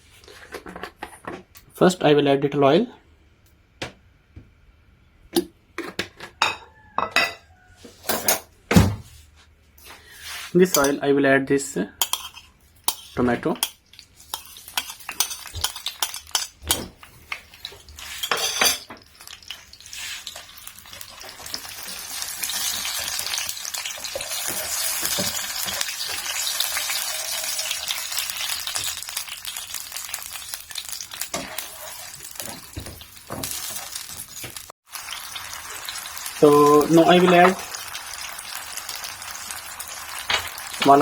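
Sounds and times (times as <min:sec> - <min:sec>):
utensil clinks and scrapes: 0:12.0 - 0:16.9, 0:17.6 - 0:20.5
tomato sizzling in hot oil: 0:12.0 - 0:41.0.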